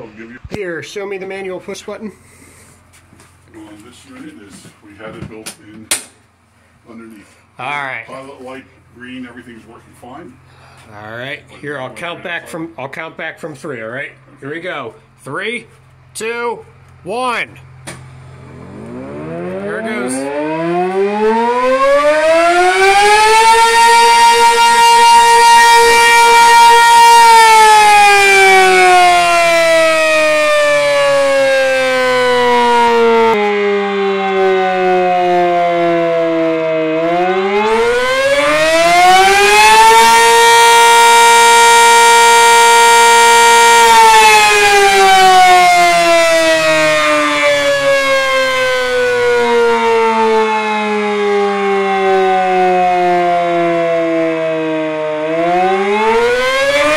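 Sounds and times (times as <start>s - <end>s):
motor-driven fire siren: 18.3s - 56.9s.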